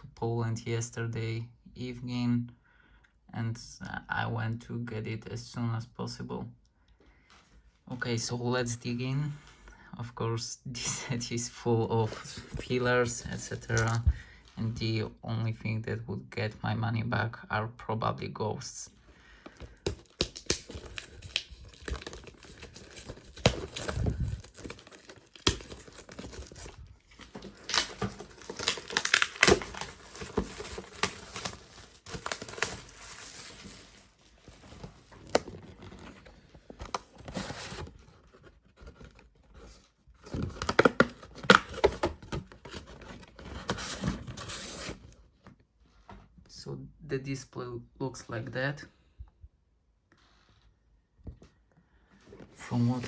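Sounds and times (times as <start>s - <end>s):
plastic wrapping tearing and crinkling: 13.4s - 14.0s, 19.7s - 36.2s.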